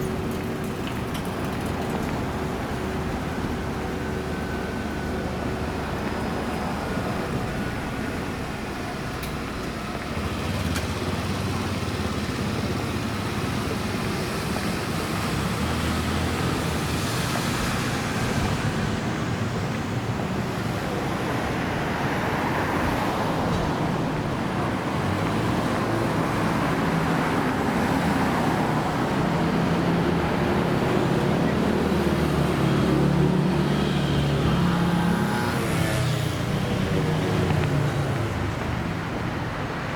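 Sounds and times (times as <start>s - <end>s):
passing cars: 0.0s - 39.9s
vehicle engine: 0.0s - 39.9s.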